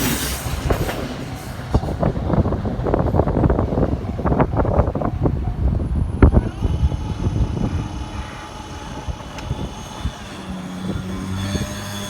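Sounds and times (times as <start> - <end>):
train clattering over rail joints: 0.0 - 5.7.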